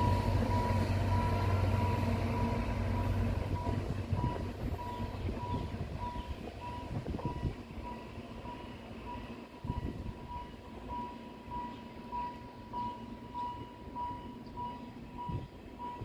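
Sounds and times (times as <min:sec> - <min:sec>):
train knocks: 0:00.0 - 0:08.6
train rumbling: 0:00.0 - 0:16.0.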